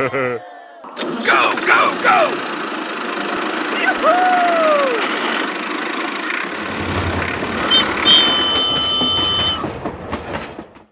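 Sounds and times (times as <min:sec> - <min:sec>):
engine running: 0:04.9 - 0:08.8
low rumble: 0:06.5 - 0:08.8
steady pitched tone: 0:06.5 - 0:08.8.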